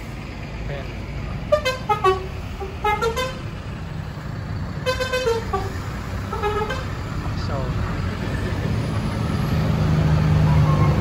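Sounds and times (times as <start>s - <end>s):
low rumble of engines and traffic: 0.0s - 11.0s
bus musical horn: 1.5s - 3.5s, 4.8s - 7.0s.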